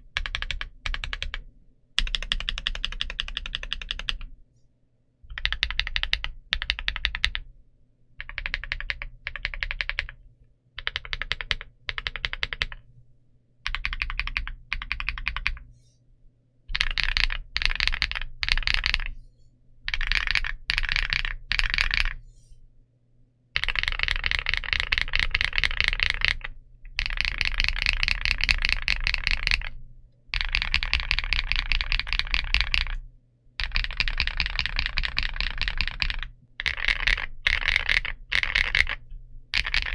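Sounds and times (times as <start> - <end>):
mechanical keyboard typing: 0.0 - 1.4, 2.0 - 4.3, 5.3 - 7.5, 8.2 - 10.2, 10.8 - 12.8, 13.7 - 15.6, 16.7 - 19.1, 19.9 - 22.2, 23.6 - 29.8, 30.4 - 33.0, 33.6 - 39.9.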